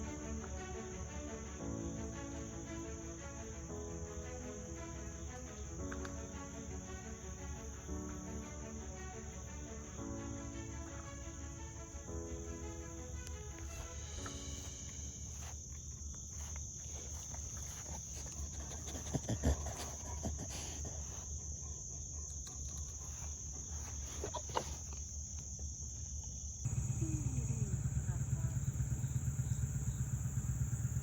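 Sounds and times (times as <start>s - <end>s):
crickets chirping: 0.6s - 31.0s
low hum: 26.7s - 31.0s.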